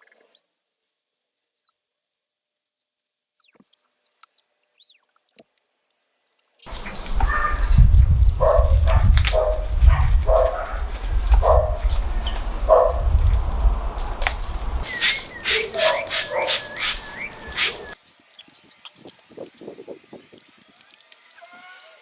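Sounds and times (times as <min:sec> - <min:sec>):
dog barking: 0:06.7 - 0:18.0.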